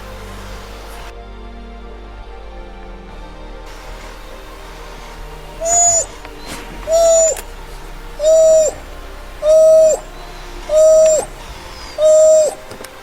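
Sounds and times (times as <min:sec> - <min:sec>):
bird hooting: 0:05.6 - 0:07.5, 0:08.2 - 0:12.9.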